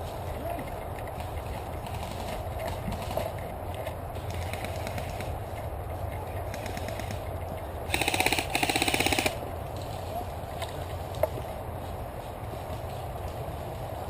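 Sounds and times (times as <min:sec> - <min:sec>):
wind rumble: 0:00.0 - 0:14.0
airsoft gun full-auto bursts: 0:07.9 - 0:09.4.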